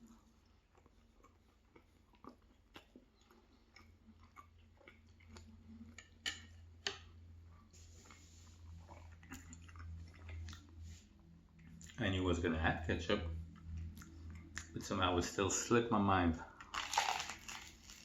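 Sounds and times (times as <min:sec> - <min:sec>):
faint chewing: 0:00.0 - 0:12.1, 0:13.4 - 0:14.8.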